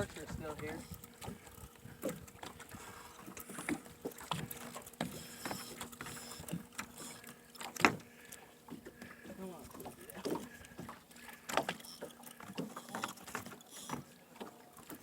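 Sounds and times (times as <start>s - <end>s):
faint steady hum: 0.0s - 15.0s
knocks and taps on a boat: 7.7s - 8.1s.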